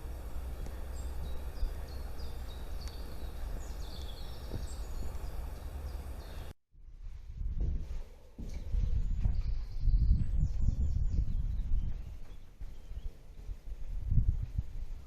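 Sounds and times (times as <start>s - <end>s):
small birds singing: 0.0s - 6.6s, 8.5s - 13.5s.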